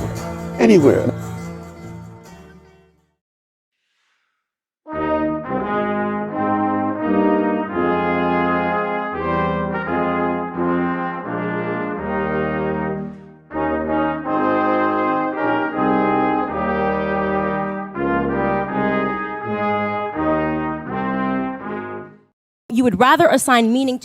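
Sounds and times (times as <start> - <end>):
brass ensemble music: 4.9 - 22.3.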